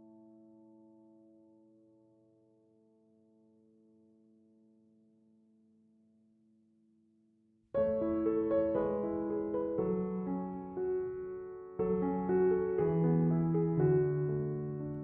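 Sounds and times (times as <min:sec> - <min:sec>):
piano music: 0:07.8 - 0:15.0.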